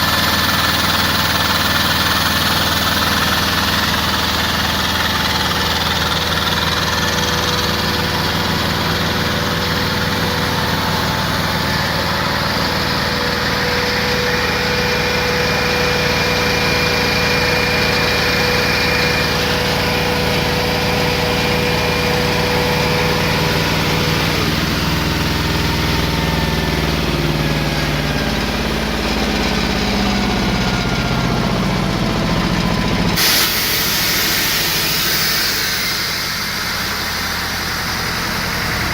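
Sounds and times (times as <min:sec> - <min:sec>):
air compressor running: 0:00.0 - 0:38.9
hiss: 0:33.2 - 0:38.9.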